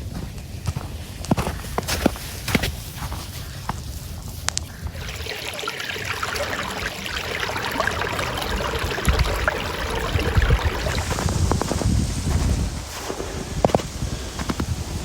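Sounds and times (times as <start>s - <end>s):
stream trickling: 4.6s - 13.2s.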